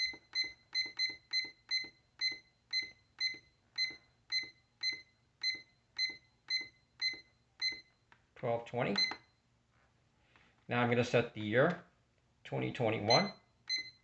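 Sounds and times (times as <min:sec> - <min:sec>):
short high clock beeps: 0:00.0 - 0:08.0, 0:13.1 - 0:14.0.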